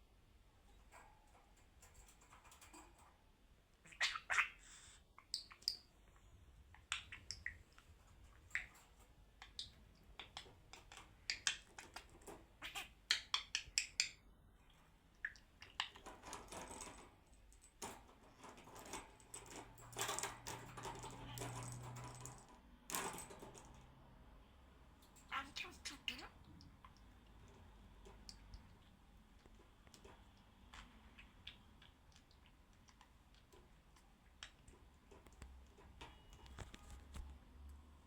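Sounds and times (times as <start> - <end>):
bird pecking at toys: 15.3 - 24.0.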